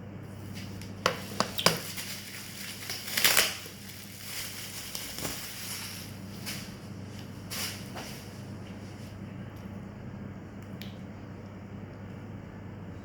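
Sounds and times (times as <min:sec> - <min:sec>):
steady low hum: 0:00.0 - 0:13.0
packaging crunching rustle: 0:01.2 - 0:06.8.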